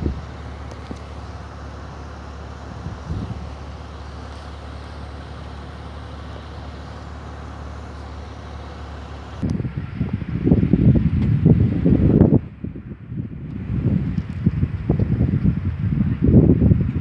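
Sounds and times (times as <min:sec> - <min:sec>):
wind buffeting microphone: 0:00.0 - 0:04.3, 0:09.4 - 0:17.0
engine rumble: 0:00.0 - 0:17.0.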